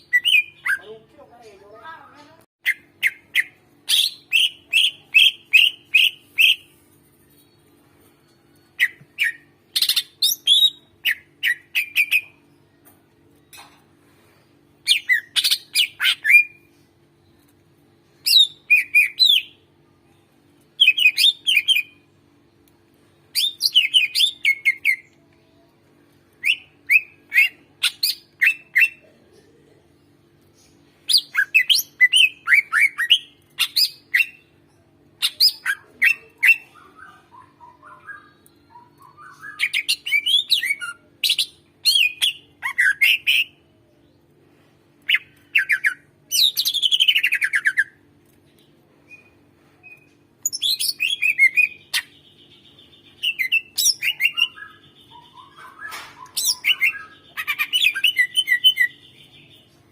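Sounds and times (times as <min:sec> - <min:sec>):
bird chirping and whistling: 0:00.0 - 0:00.8, 0:02.6 - 0:06.6, 0:08.8 - 0:12.3, 0:20.8 - 0:22.0, 0:23.4 - 0:25.0, 0:31.1 - 0:34.4, 0:35.2 - 0:43.5, 0:49.1 - 0:52.4, 0:53.2 - 0:59.5.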